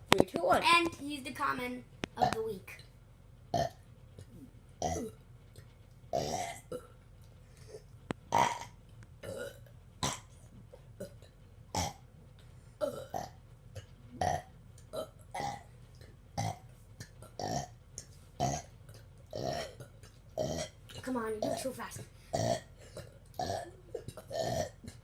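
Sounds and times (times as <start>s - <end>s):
people burping: 6.2s - 6.8s, 8.3s - 10.3s, 15.0s - 15.6s, 22.4s - 25.0s.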